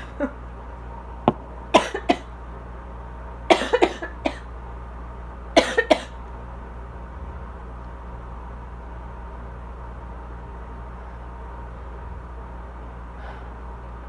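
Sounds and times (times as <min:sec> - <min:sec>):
air-conditioner hum: 0:00.0 - 0:14.0
person coughing in fits: 0:01.8 - 0:02.3, 0:03.5 - 0:04.5, 0:05.6 - 0:06.2.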